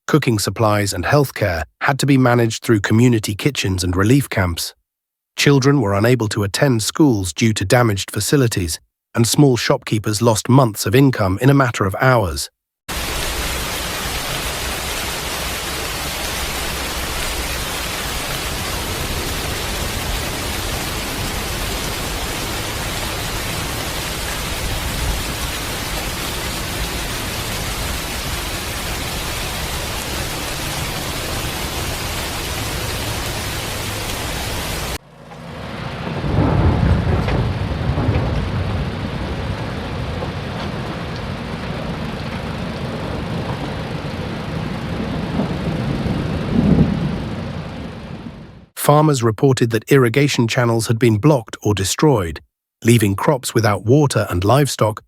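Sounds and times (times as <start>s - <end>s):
heavy rain hissing: 12.9s - 35.0s, 35.6s - 48.2s
deep rumbling rush: 35.4s - 48.4s.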